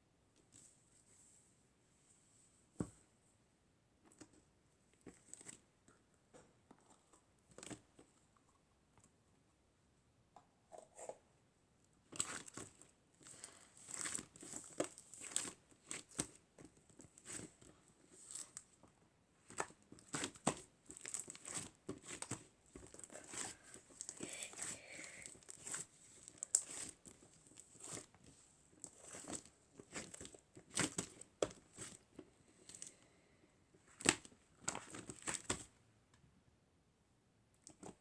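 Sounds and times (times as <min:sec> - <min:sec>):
crinkly material crinkling: 0:12.1 - 0:33.0, 0:33.8 - 0:35.7.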